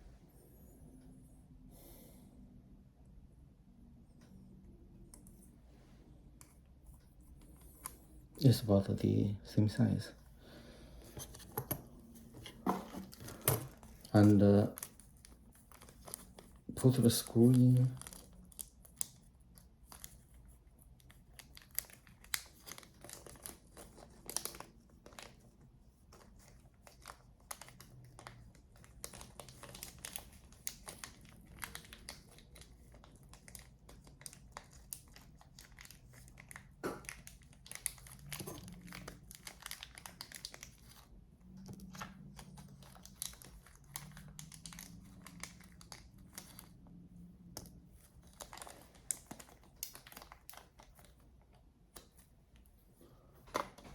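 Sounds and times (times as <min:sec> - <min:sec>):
hands handling computer parts: 0:11.0 - 0:17.9, 0:53.3 - 0:53.9.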